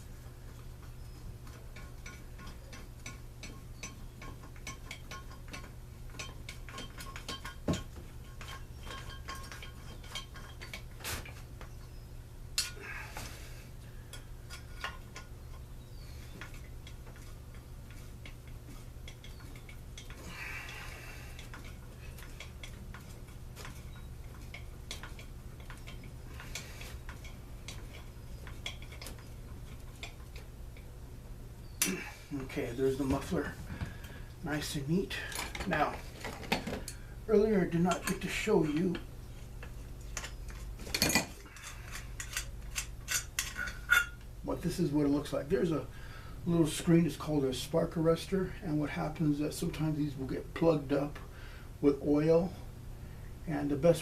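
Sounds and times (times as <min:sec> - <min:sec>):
low steady hum: 0:00.0 - 0:54.0
metal parts clicking and clinking: 0:01.5 - 0:10.9, 0:16.4 - 0:30.5, 0:39.6 - 0:44.3.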